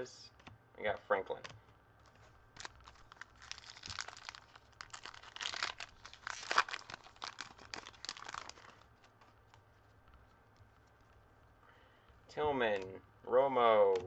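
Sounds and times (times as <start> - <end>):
plastic wrapper tearing and crinkling: 2.2 - 9.3.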